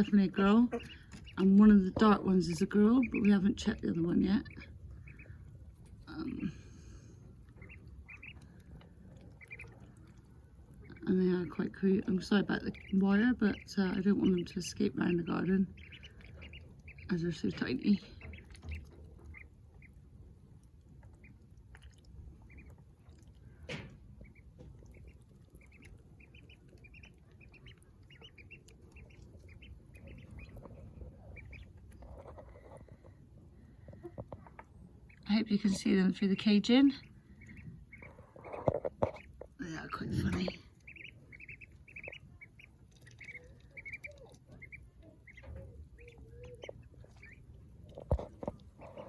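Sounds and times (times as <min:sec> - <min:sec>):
ducklings peeping: 0:00.0 - 0:49.0.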